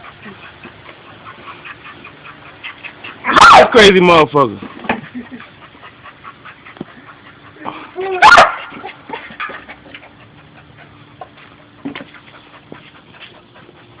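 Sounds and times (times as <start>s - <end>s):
dog biting and pawing at mower: 0.0s - 14.0s
dog barking: 8.2s - 8.8s.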